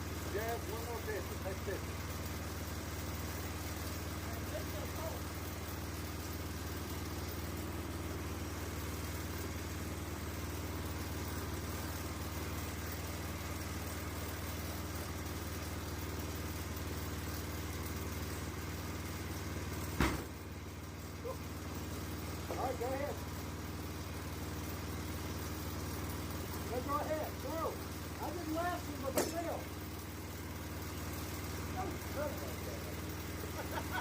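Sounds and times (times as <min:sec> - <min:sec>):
sawmill engine idling: 0:00.0 - 0:34.0
sharp knock: 0:20.0 - 0:20.3.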